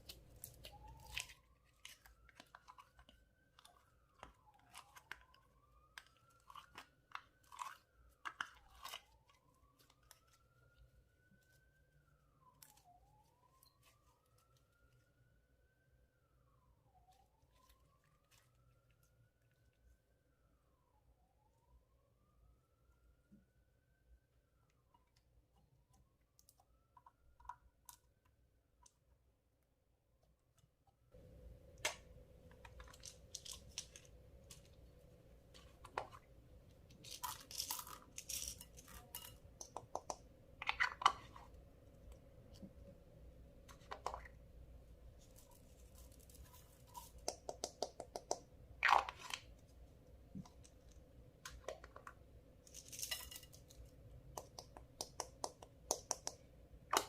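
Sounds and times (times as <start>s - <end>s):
faint steady hum: 0.0s - 57.0s
slime clicking and popping: 54.3s - 57.0s.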